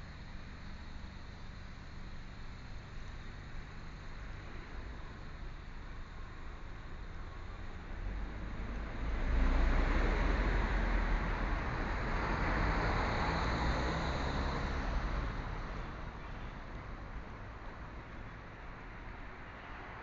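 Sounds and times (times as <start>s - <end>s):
car driving past: 8.1s - 16.2s.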